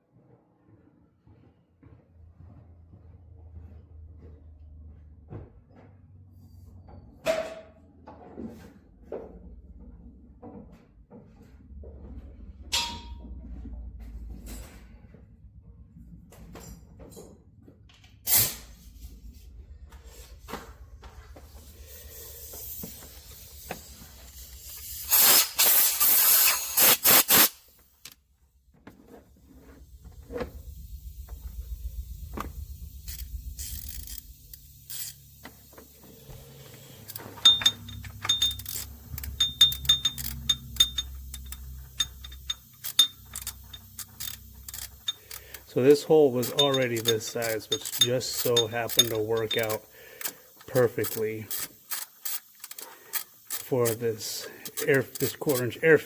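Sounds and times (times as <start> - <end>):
hiss bursts: 21.4 - 27.8
small metallic clicks: 32.4 - 35.6, 36.4 - 56.0.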